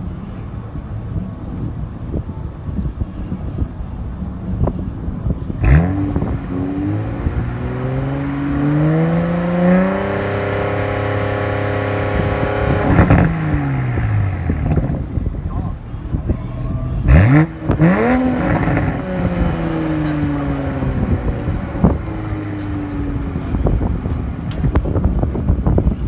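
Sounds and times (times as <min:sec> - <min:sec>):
car engine revving: 0:04.6 - 0:26.0
exhaust pops and crackles: 0:05.6 - 0:16.4, 0:17.1 - 0:26.0.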